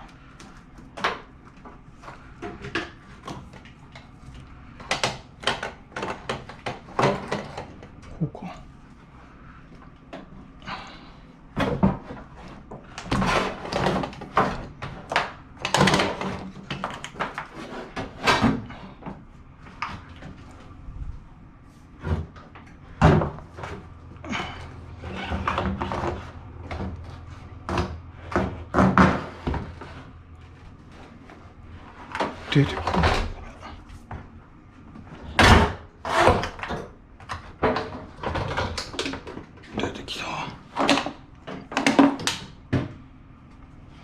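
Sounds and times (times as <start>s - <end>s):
appliance panels knocking and clattering: 4.8s - 8.1s, 11.5s - 19.0s, 22.0s - 30.2s, 35.0s - 39.7s, 40.7s - 43.0s.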